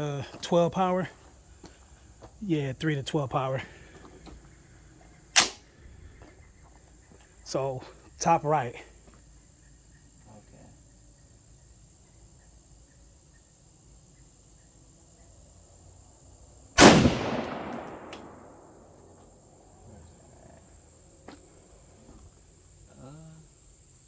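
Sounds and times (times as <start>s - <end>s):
rifle shot with echo: 5.4s - 5.6s, 16.8s - 19.0s
faint click: 17.7s - 18.4s.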